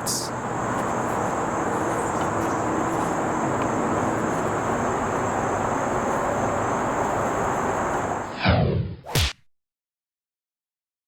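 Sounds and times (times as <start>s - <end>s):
steady background noise: 0.0s - 8.4s.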